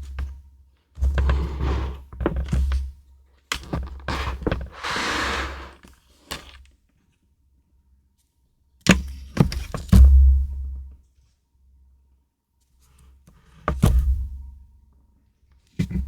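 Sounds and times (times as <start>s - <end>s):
items knocking on a desk: 3.6s - 5.8s
paper or plastic rustling: 3.7s - 5.8s.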